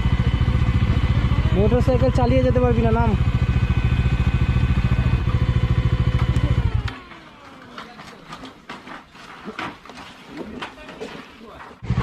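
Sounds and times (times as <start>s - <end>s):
motorcycle engine idling: 0.0s - 7.2s.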